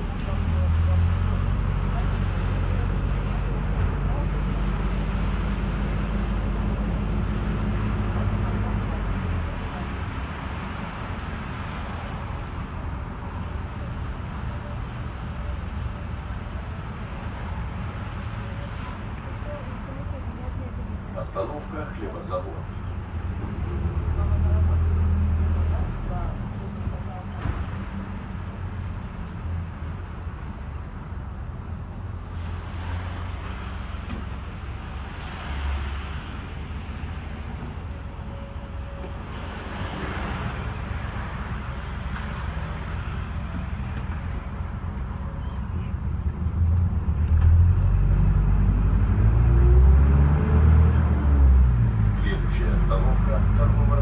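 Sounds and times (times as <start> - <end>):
bus engine and road rumble: 0.0 - 54.0.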